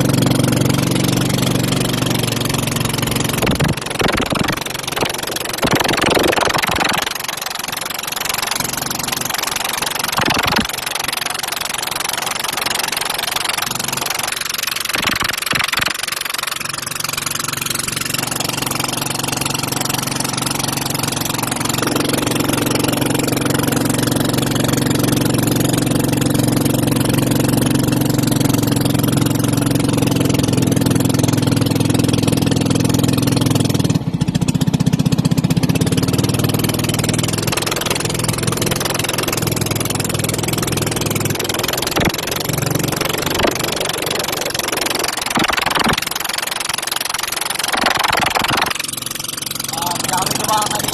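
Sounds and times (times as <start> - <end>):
vehicle engine hum: 0.0 - 50.9
wind noise: 3.3 - 7.1, 10.2 - 10.7.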